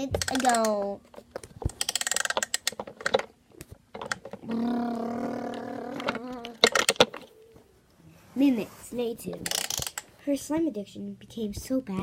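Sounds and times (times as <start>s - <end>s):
plastic toys clicking: 0.0s - 3.3s, 3.9s - 4.7s, 5.4s - 7.3s, 9.3s - 10.1s
voice holding a note: 4.4s - 6.6s.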